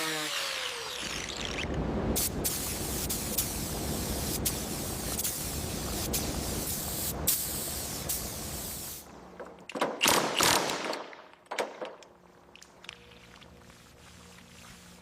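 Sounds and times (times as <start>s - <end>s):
spray hissing: 2.2s - 9.1s.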